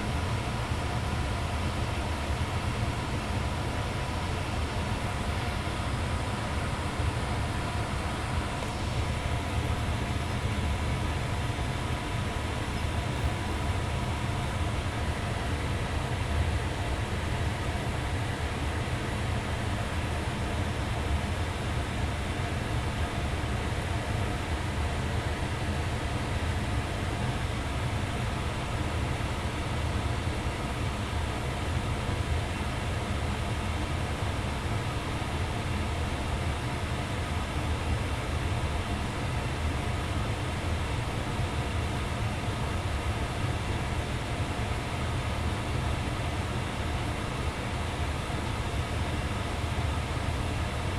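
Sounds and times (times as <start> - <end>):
faint steady hum: 0.0 - 50.9
furnace blower rumbling: 3.2 - 27.6.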